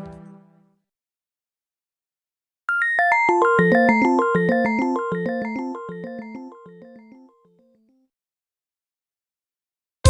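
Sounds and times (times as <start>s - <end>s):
fast synthesized ringtone melody: 2.7s - 7.6s.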